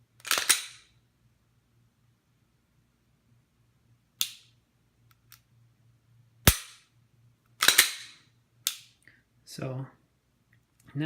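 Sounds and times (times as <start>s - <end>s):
faint low hum: 0.0s - 11.0s
pistol slide metallic snaps: 0.2s - 0.9s, 4.2s - 4.5s, 6.4s - 6.9s, 7.6s - 9.0s.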